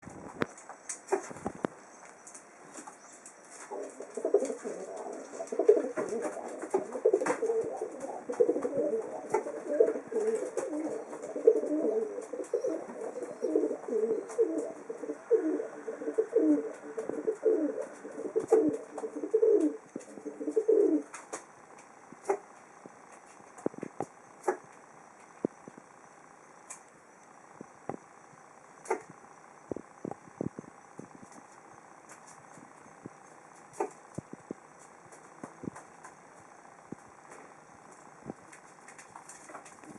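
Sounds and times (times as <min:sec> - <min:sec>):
pigeon cooing: 0:03.0 - 0:21.4, 0:22.2 - 0:22.5, 0:33.7 - 0:34.1.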